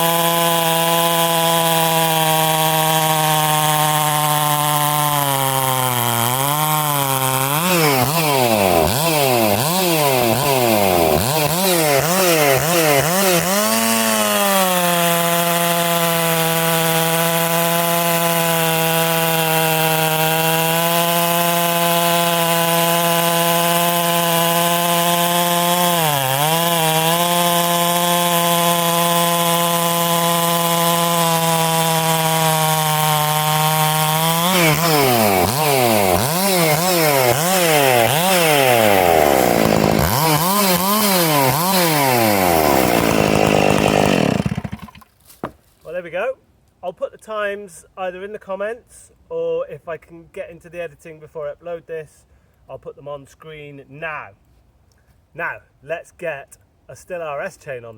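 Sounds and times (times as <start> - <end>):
chainsaw cutting wood: 0.0 - 46.0.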